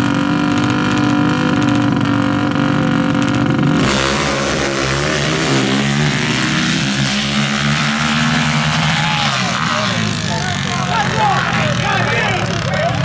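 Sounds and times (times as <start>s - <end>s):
quad engines revving high: 0.0s - 13.0s.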